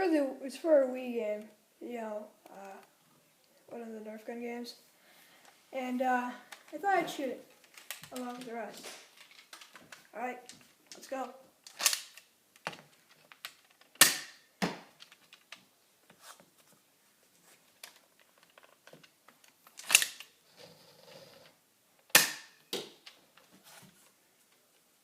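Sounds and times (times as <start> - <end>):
clicks of cocking: 19.8 - 20.3.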